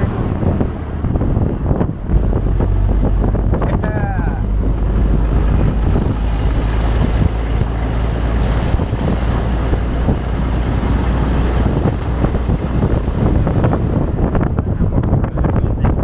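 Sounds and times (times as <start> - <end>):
car engine and road rumble: 0.0 - 16.0
wind buffeting microphone: 0.0 - 16.0.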